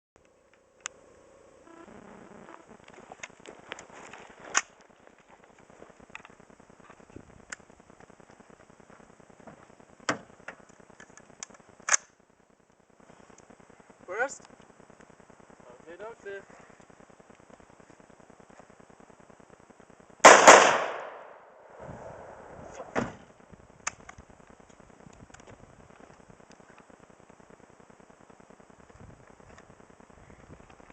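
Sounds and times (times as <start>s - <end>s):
sharp cracks and clicks: 4.5s - 4.9s, 10.0s - 12.2s, 20.2s - 21.4s, 23.8s - 26.9s
rifle shots with echo: 20.2s - 22.4s.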